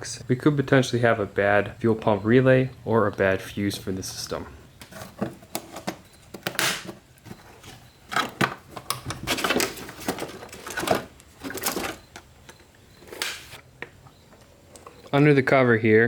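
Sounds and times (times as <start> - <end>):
plastic cover clicks and rattles: 8.1 - 14.0.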